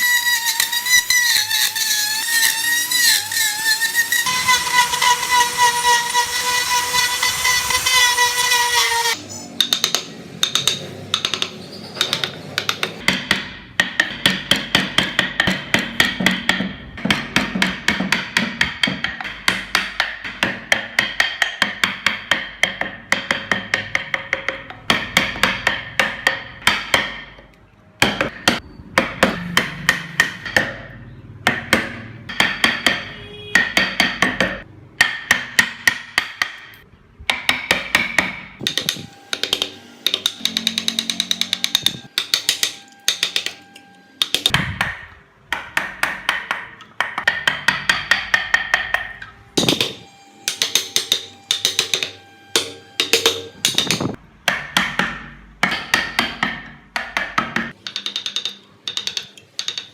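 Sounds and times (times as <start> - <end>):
power tool running: 0.4 - 9.2
hammer blows on wood carving: 28.0 - 36.7, 37.3 - 43.7, 44.3 - 59.9.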